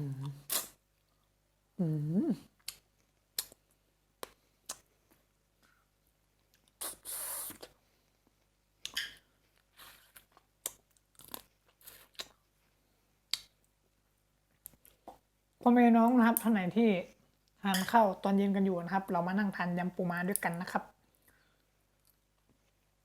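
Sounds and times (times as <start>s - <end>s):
chewing and crunching food: 7.6s - 12.7s.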